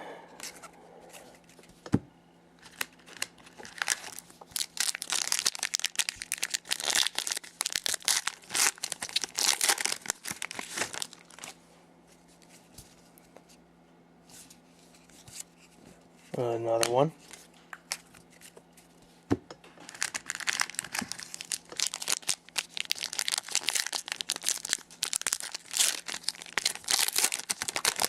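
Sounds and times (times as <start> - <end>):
wrapper tearing and crinkling: 2.6 - 11.6, 19.8 - 28.0.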